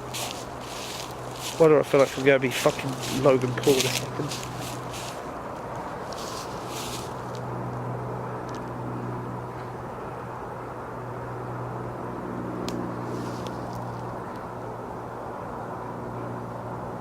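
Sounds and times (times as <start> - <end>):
twigs snapping: 0.0 - 7.5
low engine drone: 0.0 - 17.0.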